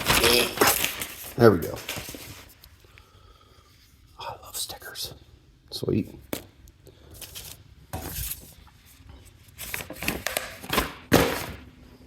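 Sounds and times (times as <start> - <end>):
paper and packaging rustling: 0.0 - 2.8, 7.0 - 11.7.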